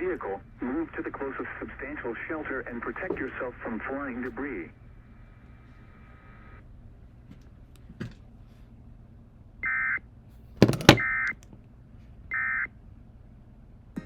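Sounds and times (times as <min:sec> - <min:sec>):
loud knock: 0:10.6 - 0:11.1.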